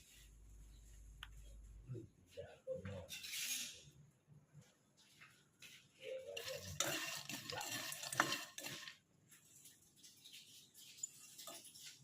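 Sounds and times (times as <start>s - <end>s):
spatula scraping nuts in pan: 6.3s - 9.0s, 10.3s - 12.0s.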